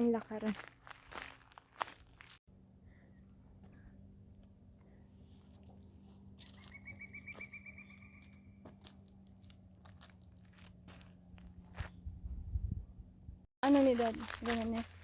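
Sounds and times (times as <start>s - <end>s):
footsteps crunching on a trail: 0.0s - 2.4s, 5.4s - 12.2s, 13.6s - 15.0s.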